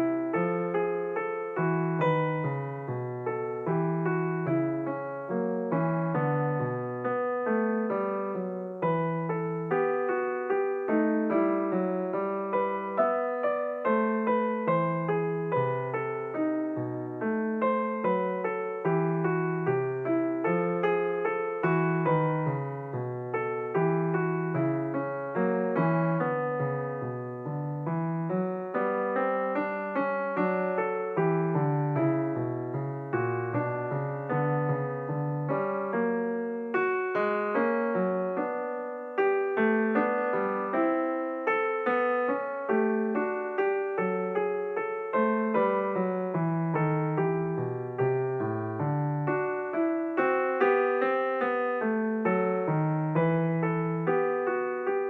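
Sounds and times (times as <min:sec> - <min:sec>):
solo piano music: 0:00.0 - 0:55.0.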